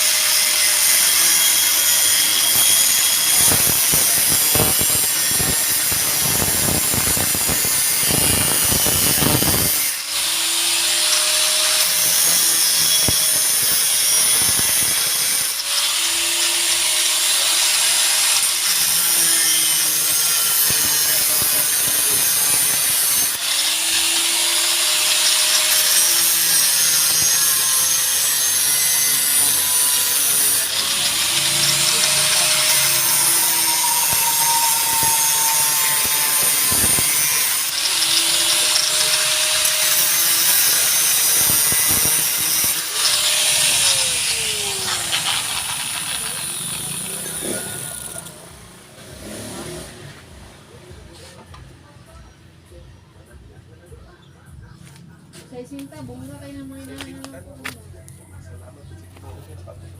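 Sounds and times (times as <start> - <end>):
power tool cutting metal: 0.0 - 50.0.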